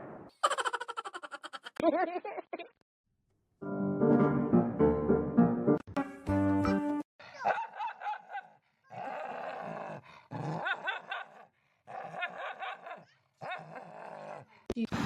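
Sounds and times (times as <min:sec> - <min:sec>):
piano music: 0:03.6 - 0:07.0
dog barking and growling: 0:07.4 - 0:14.7.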